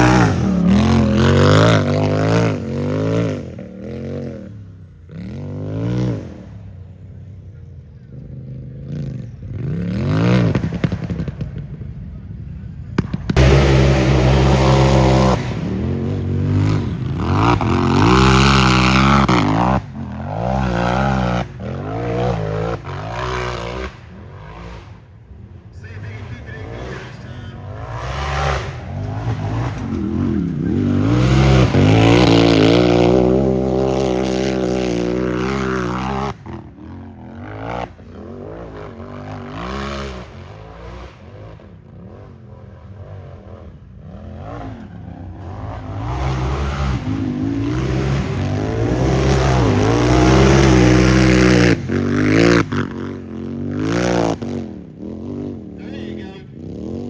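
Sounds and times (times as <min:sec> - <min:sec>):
race engine revving hard: 0:00.0 - 0:04.6, 0:13.4 - 0:36.7, 0:44.4 - 0:57.0.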